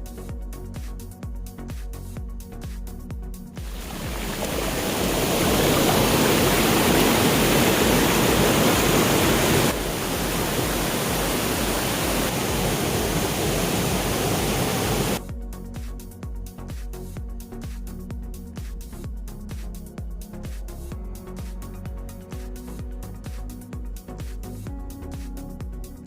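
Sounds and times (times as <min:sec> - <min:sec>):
background music: 0:00.0 - 0:26.0
waterfall rushing: 0:03.6 - 0:15.2.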